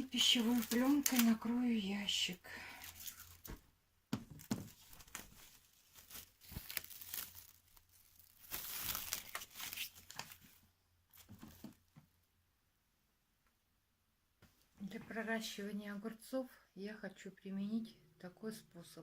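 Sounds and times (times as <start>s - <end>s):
cling film crinkling: 0.0s - 1.6s, 2.6s - 3.6s, 4.4s - 11.2s.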